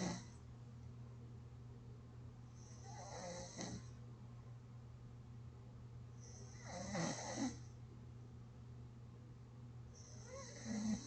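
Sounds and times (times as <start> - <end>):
person snoring: 0.0 - 0.3, 2.6 - 3.9, 6.2 - 7.6, 10.0 - 11.0
steady low hum: 0.0 - 11.0.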